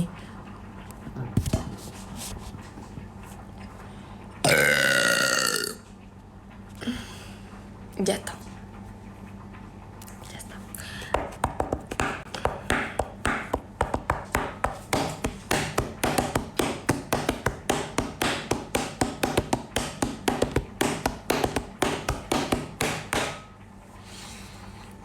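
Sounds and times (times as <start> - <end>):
rapid sharp taps: 11.1 - 23.4.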